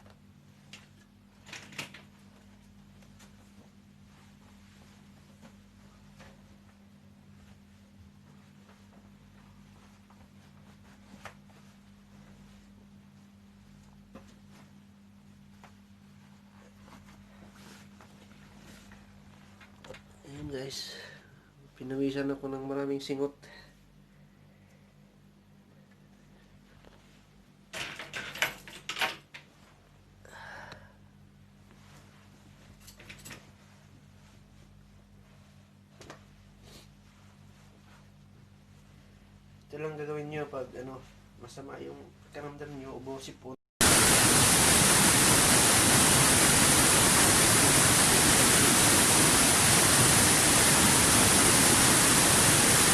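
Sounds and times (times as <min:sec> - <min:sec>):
static hiss: 0:43.8 - 0:52.9.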